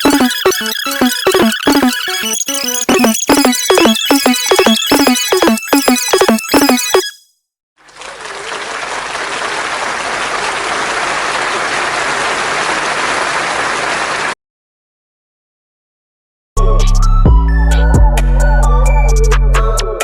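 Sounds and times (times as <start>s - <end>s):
crowd cheering and applauding: 7.9s - 14.4s.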